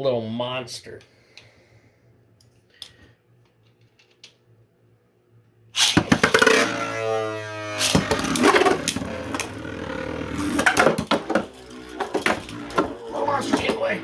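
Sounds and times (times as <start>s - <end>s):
steady low hum: 4.9s - 14.0s
spinning tops clicking and knocking: 5.8s - 14.0s
spinning tops whining: 5.8s - 14.0s.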